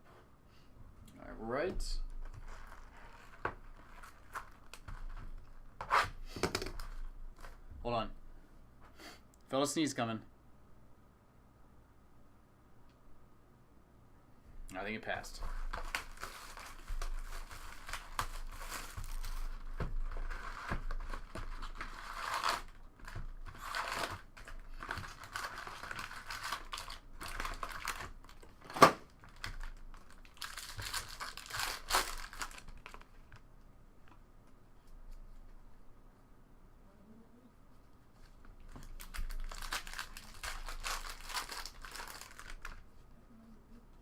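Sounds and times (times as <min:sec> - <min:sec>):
card pack wrappers crinkling: 0:15.4 - 0:33.2, 0:38.7 - 0:42.8.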